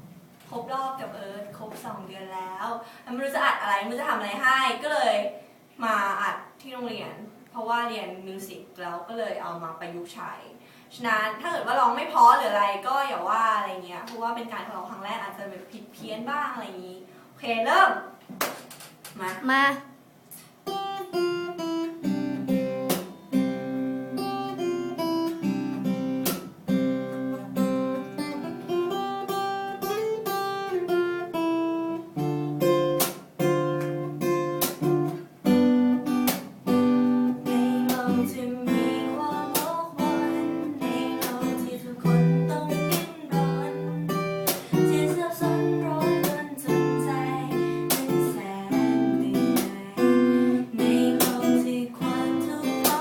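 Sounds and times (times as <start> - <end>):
acoustic guitar strumming chords: 20.6 - 53.0.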